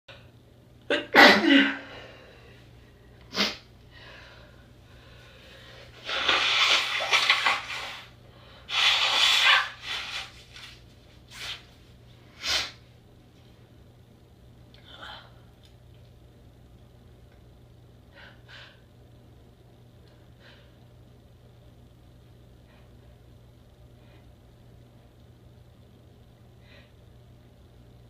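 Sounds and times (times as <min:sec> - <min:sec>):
person sneezing: 0:00.9 - 0:01.9, 0:03.3 - 0:03.7
sniffs: 0:08.7 - 0:10.3, 0:12.4 - 0:12.8.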